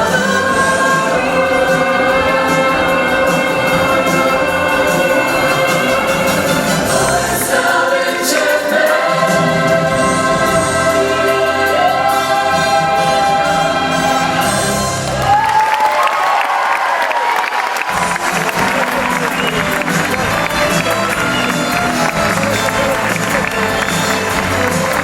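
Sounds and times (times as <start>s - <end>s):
choir singing long held notes: 0.0s - 15.1s
musical backing: 0.0s - 15.8s, 17.5s - 25.0s.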